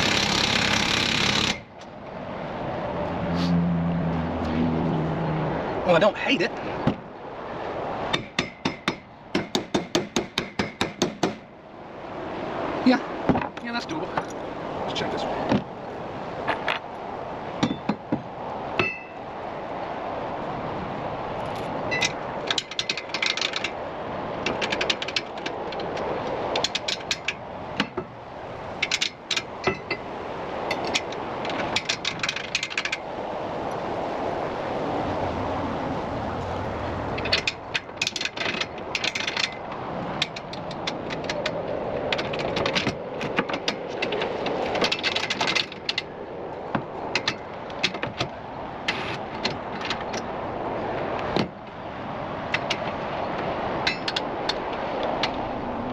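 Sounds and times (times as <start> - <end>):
steady background noise: 0.0 - 55.9
metallic clicking and rattling: 21.5 - 23.8, 24.4 - 28.1, 28.8 - 30.1, 30.7 - 33.0, 37.2 - 46.1, 47.1 - 50.3, 52.5 - 55.5.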